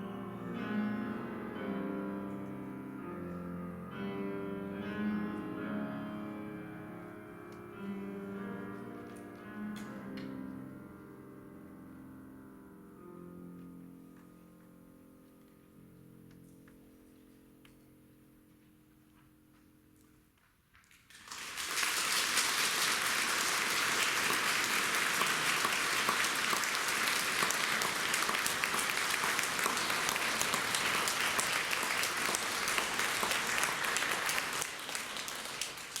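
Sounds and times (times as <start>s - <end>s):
audience applauding: 21.1s - 36.0s.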